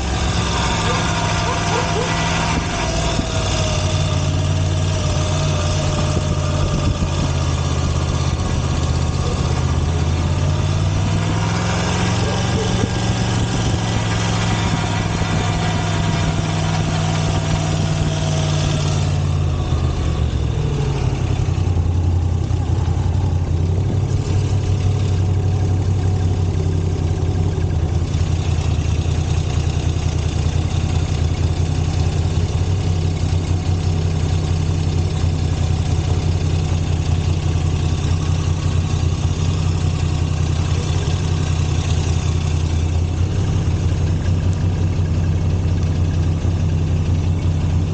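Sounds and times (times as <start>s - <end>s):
motorcycle engine idling: 4.1s - 10.8s, 12.0s - 47.9s.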